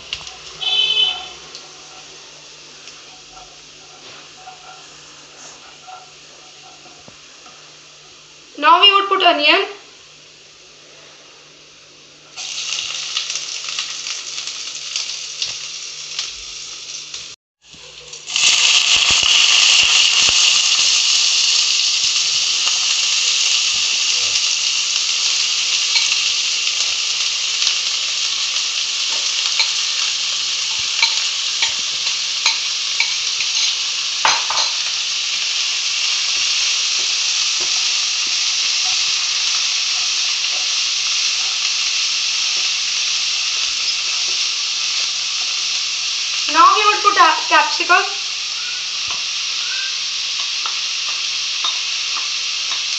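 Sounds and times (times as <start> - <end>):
onions sizzling in a pan: 0.0 - 52.9.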